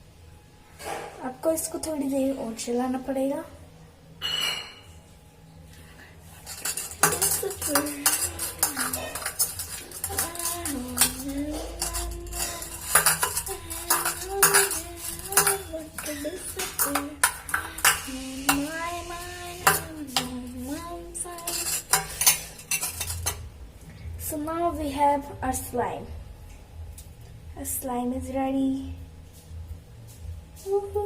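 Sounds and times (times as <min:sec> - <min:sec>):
spoon scraping slime in bowl: 0:06.3 - 0:23.4.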